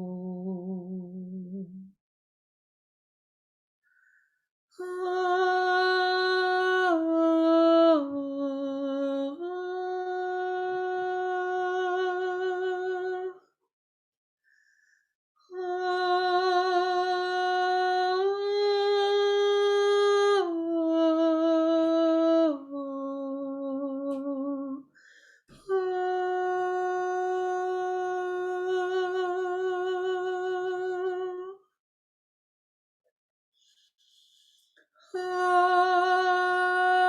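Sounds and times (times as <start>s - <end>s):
click: 24.0s - 24.4s.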